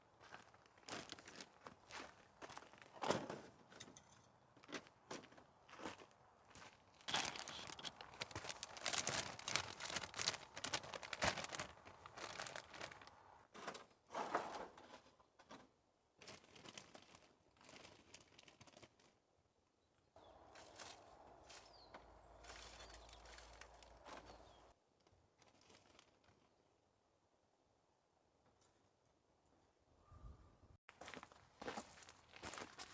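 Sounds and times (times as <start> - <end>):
crinkling and rustling: 6.9 - 19.1, 20.3 - 26.5
quick clicks and crackles: 7.0 - 13.2.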